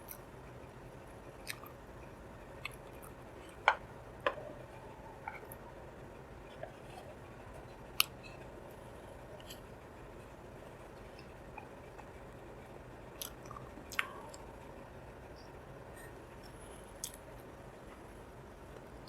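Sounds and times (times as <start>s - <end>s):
quiet chewing: 1.4s - 1.8s, 2.6s - 5.8s, 6.4s - 12.2s, 13.2s - 14.7s, 15.3s - 18.1s
sharp mouth clicks and smacks: 1.5s - 1.7s, 13.2s - 14.4s.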